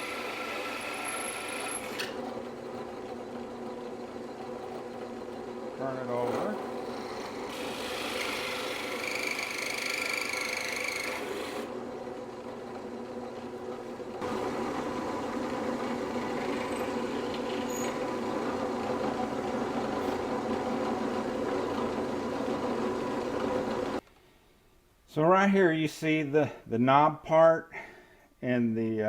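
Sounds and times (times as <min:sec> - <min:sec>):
power tool motor cutting wood: 0:00.0 - 0:03.6, 0:04.5 - 0:11.8.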